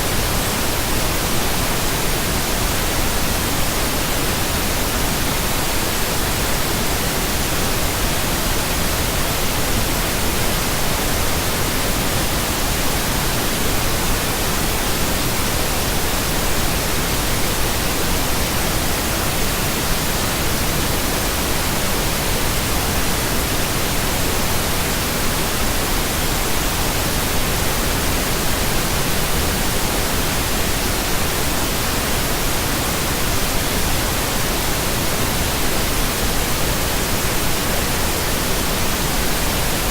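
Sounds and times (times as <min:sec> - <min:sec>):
pink noise hiss: 0:00.0 - 0:39.9.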